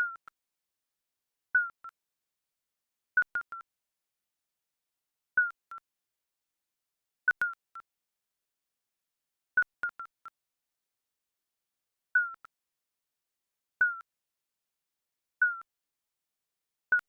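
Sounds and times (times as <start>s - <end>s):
electronic timer beeps: 3.2s - 3.7s.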